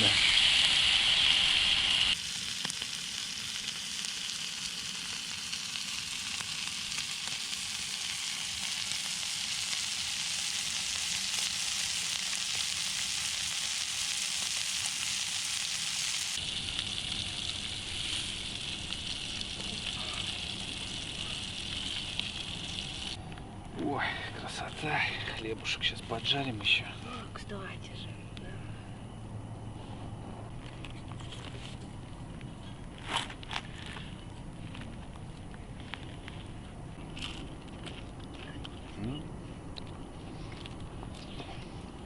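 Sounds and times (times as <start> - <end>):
sausages sizzling in a pan: 0.0 - 23.2.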